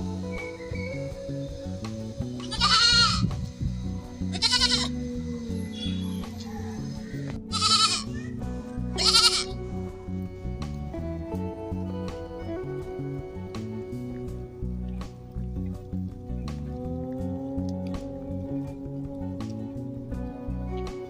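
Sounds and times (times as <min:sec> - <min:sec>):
background music: 0:00.0 - 0:21.0
goats bleating: 0:02.4 - 0:03.3, 0:04.2 - 0:05.1, 0:07.1 - 0:09.8.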